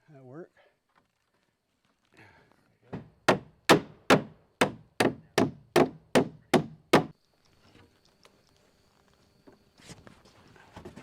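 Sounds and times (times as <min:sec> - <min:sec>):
hammer driving a nail into wood: 0:03.0 - 0:07.1.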